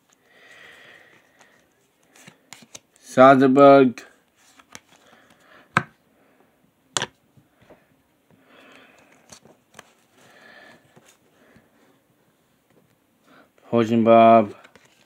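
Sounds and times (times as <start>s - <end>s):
cards sliding against each other: 1.1s - 3.0s, 4.4s - 5.9s, 8.6s - 11.6s, 14.5s - 15.0s.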